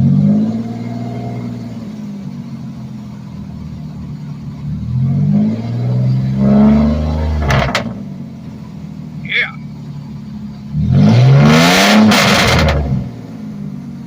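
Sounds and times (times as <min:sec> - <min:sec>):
engine revving: 0:00.0 - 0:01.7, 0:04.7 - 0:08.0, 0:10.7 - 0:13.3.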